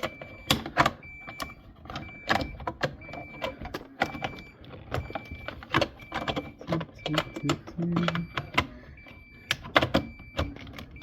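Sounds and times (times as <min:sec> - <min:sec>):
plastic cover clicking and rattling: 0:00.0 - 0:11.0.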